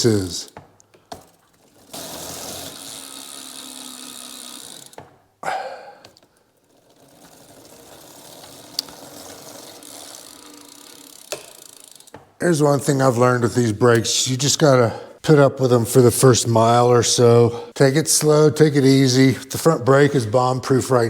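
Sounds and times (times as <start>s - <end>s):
freewheel ratchet clicking: 1.0s - 5.2s, 6.0s - 12.2s
bicycle wheel spinning with whir: 1.0s - 5.3s, 6.0s - 12.4s
wheel braked to a stop: 1.1s - 5.1s, 6.6s - 12.2s.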